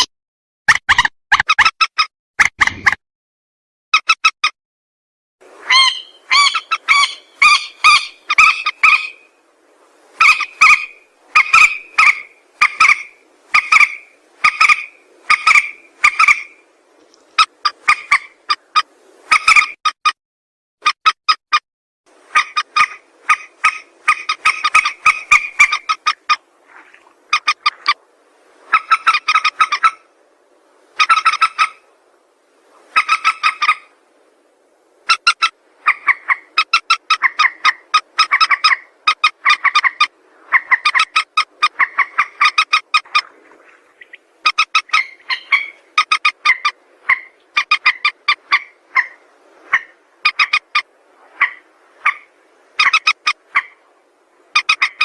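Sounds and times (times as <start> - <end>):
rail bird harsh calls: 5.7 - 9.3, 10.2 - 16.6, 44.4 - 53.8.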